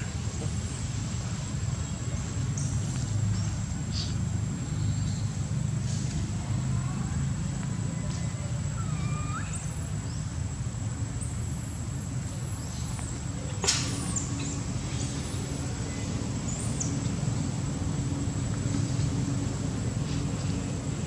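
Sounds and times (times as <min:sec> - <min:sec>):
distant traffic rumble: 0:00.0 - 0:21.0.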